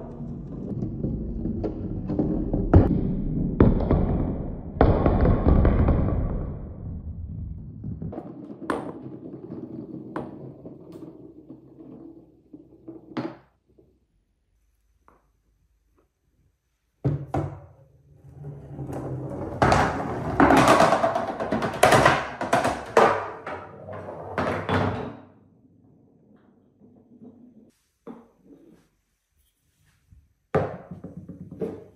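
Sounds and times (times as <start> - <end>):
balls rolling on wooden track: 0.0 - 14.0, 17.1 - 28.6, 30.6 - 31.9
balls clattering on wood: 7.3 - 14.0, 18.8 - 25.2, 30.6 - 31.9.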